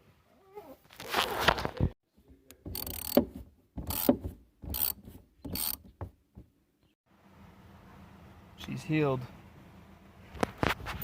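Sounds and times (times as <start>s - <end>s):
socket ratchet clicking: 2.7s - 3.2s, 4.7s - 5.8s.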